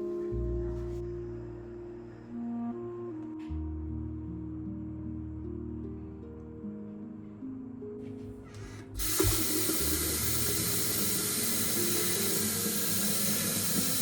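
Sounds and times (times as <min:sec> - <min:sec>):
soft background music: 0:00.0 - 0:14.0
tap running water into sink: 0:09.0 - 0:14.0.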